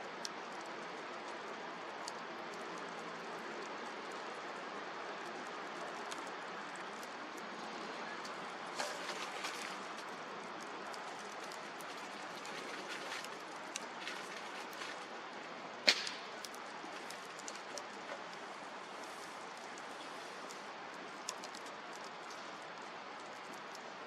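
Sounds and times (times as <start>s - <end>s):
wood fire crackling: 0.0s - 24.0s
loud fire snap: 15.8s - 19.2s.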